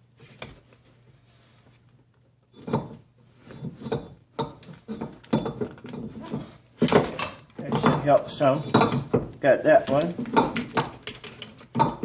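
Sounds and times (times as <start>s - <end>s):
metal tools clanking: 2.6s - 12.0s.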